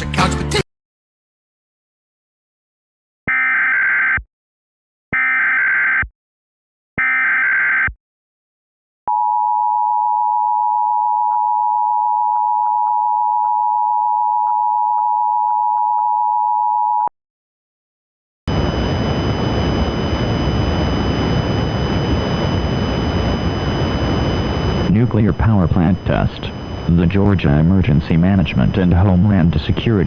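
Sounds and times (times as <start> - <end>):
two-tone alert alarm: 3.3 - 4.2, 5.2 - 6.1, 7.0 - 8.0
warbling data tones: 18.5 - 30.0.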